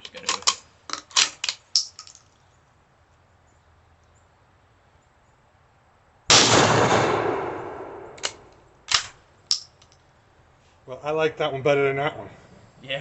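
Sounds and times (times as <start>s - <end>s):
bolt action clicks: 0.2s - 2.2s, 8.1s - 10.0s
shotgun blast with echo: 6.3s - 8.2s.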